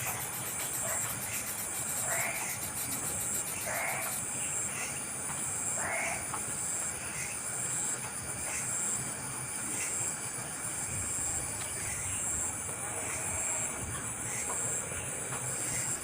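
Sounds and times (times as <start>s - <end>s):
bird raspy hissing calls: 0.0s - 9.0s
insect chirring: 0.0s - 16.0s.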